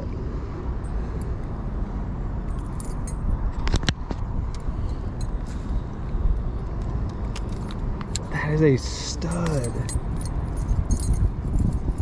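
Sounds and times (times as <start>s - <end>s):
wind buffeting microphone: 0.0s - 12.0s
light clicks and rattles: 2.5s - 12.0s.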